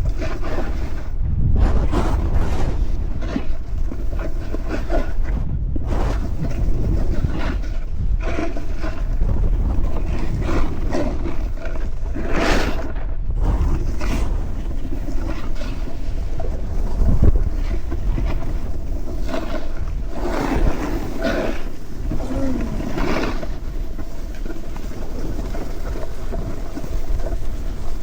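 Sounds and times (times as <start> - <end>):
wind buffeting microphone: 0.0 - 12.3, 12.9 - 28.0
snowboard scraping over snow: 0.0 - 28.0.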